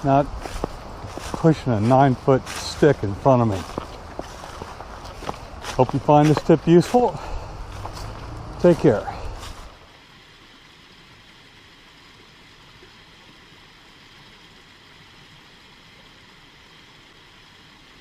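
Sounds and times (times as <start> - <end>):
mountain stream rushing: 0.0 - 13.7.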